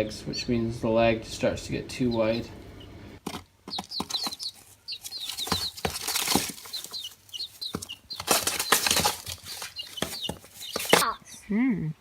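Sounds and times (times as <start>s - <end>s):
baby chicks peeping: 0.0s - 11.5s
rustling and light tapping: 3.2s - 11.0s.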